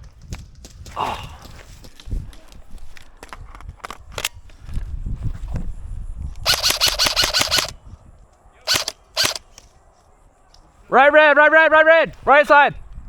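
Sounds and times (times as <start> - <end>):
airsoft gun full-auto burst: 6.5 - 7.7, 8.7 - 9.5.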